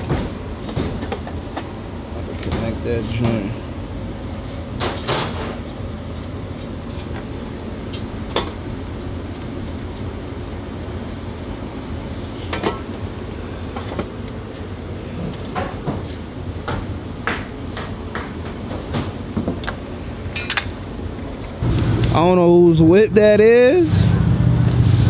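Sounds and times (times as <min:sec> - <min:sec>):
steady low hum: 0:00.0 - 0:25.0
metal clinks and knocks: 0:19.5 - 0:20.8.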